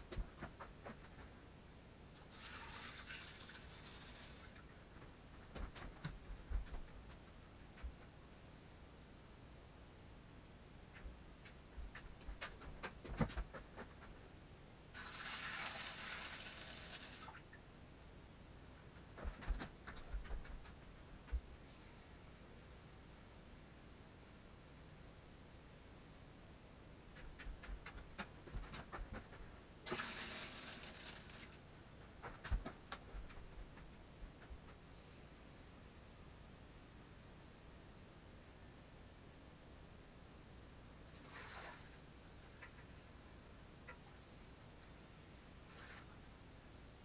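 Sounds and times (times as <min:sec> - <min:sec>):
water pouring into a tank: 0:02.3 - 0:04.5, 0:15.0 - 0:17.4.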